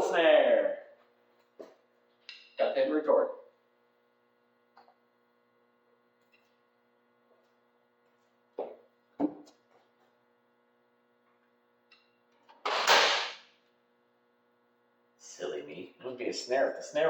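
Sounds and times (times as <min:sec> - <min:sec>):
electrical hum: 0:00.0 - 0:17.0.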